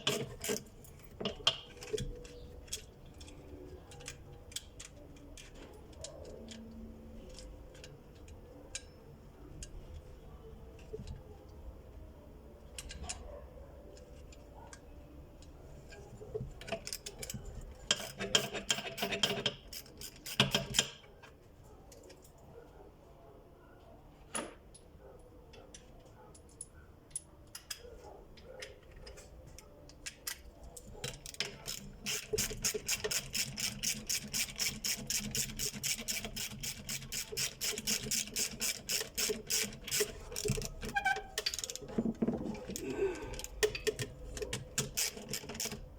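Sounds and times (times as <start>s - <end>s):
clatter of parts being handled: 25.6s - 45.9s.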